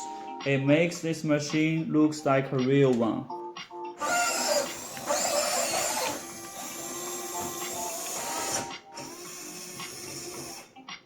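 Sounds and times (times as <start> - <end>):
electric servos whirring: 4.0 - 10.7.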